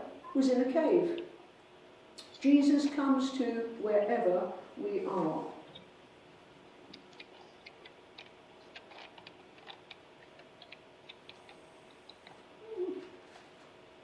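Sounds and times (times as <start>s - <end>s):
low room hum: 0.0s - 14.0s
small clicks and ticks: 6.9s - 12.5s.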